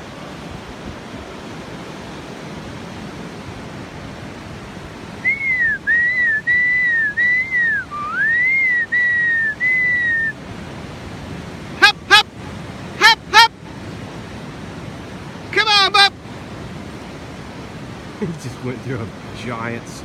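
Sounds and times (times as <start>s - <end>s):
person whistling to call dog: 5.2s - 10.4s.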